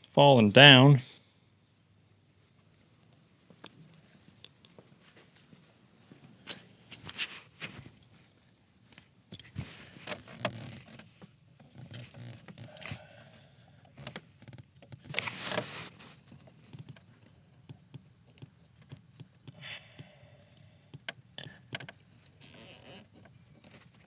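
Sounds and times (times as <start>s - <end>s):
rustling: 15.0s - 16.8s
hands clicking and tapping on parts: 16.3s - 22.0s.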